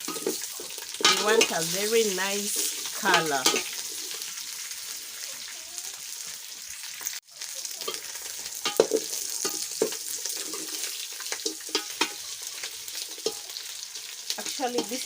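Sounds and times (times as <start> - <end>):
stirring taps and scrapes: 0.0 - 1.6, 8.6 - 13.7
chicken sizzling in a pan: 0.0 - 15.0.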